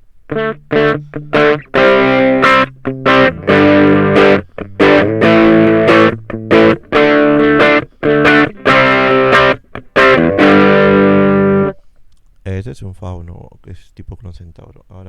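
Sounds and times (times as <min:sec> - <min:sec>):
overdriven electric guitar chords: 0:00.0 - 0:11.8.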